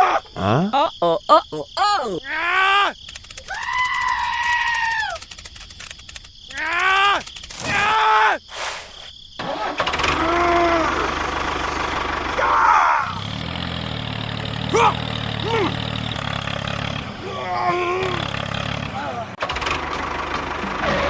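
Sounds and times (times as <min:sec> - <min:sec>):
short falling cries: 0:02.2 - 0:05.2.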